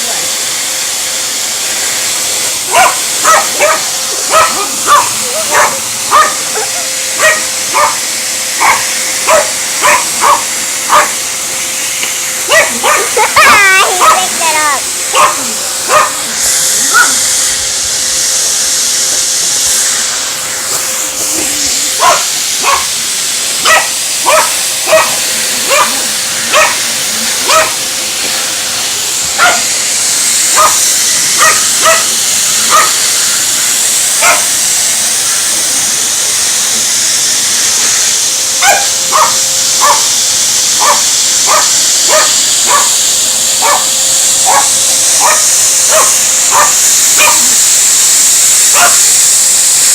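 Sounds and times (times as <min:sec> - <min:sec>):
vacuum cleaner running: 0:00.0 - 0:49.9
dog barking: 0:02.7 - 0:08.0, 0:08.6 - 0:11.2, 0:12.5 - 0:14.4, 0:15.1 - 0:16.2, 0:16.9 - 0:17.2, 0:22.0 - 0:22.9, 0:23.6 - 0:26.8, 0:27.4 - 0:27.8, 0:29.4 - 0:29.7, 0:30.5 - 0:32.1, 0:32.7 - 0:33.0, 0:34.2 - 0:34.5, 0:38.6 - 0:40.1, 0:40.8 - 0:43.0, 0:43.6 - 0:47.5, 0:48.7 - 0:49.0.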